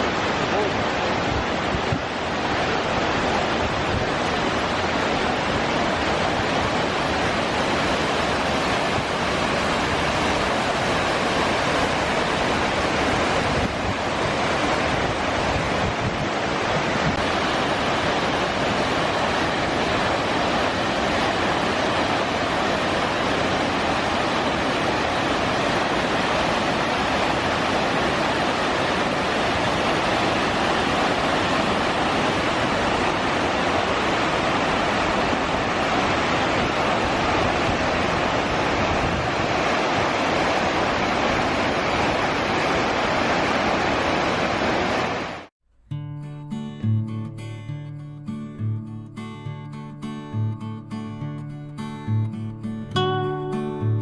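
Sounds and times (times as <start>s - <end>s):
water rushing over waterfall: 0.0s - 45.5s.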